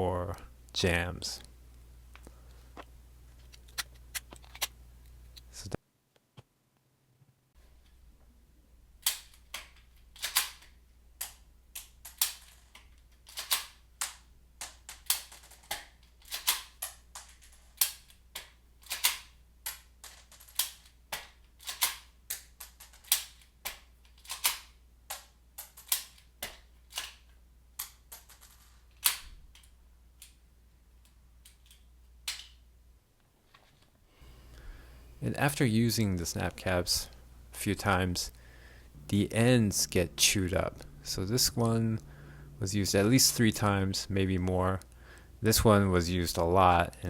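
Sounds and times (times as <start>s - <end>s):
pistol metallic clicks: 9.0s - 19.9s, 20.5s - 28.3s.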